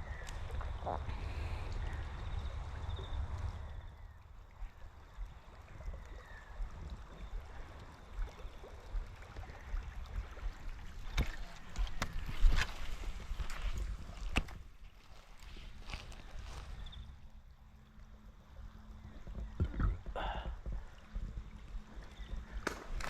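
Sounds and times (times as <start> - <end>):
faint running water: 0.0 - 23.0.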